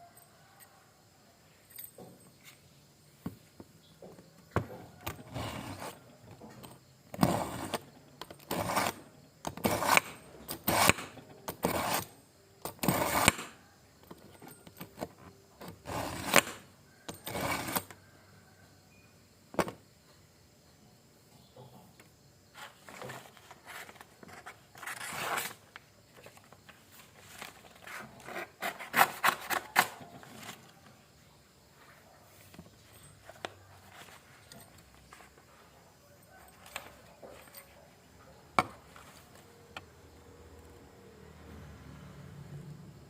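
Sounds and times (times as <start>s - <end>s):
knife scraping through sharpener: 5.1s - 6.0s, 7.2s - 13.6s, 15.7s - 16.6s, 17.2s - 17.9s.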